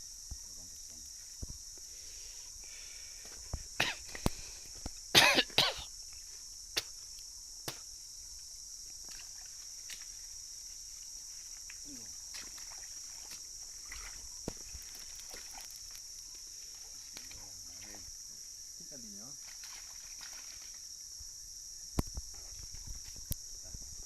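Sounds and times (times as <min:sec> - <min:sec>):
high-pitched insect drone: 0:00.0 - 0:24.0.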